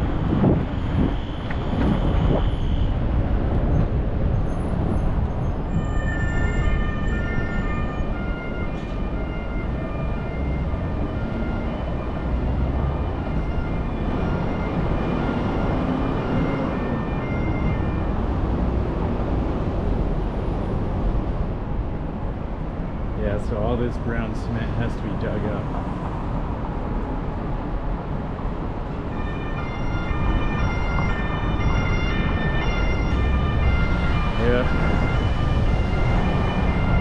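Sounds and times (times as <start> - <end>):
distant siren: 0.0 - 3.0, 5.4 - 19.2, 29.0 - 37.0
city traffic noise: 0.0 - 37.0.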